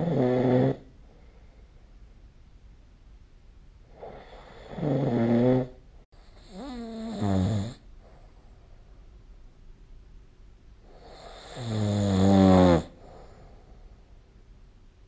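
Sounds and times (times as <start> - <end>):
person snoring: 0.0 - 0.9, 3.9 - 5.8, 6.4 - 7.8, 10.9 - 13.3.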